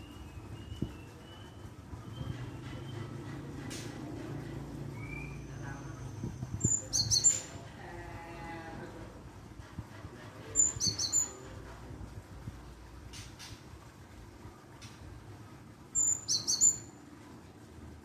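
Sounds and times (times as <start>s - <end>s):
high chirping bird calls: 4.9s - 7.6s, 10.5s - 11.5s, 15.9s - 17.0s.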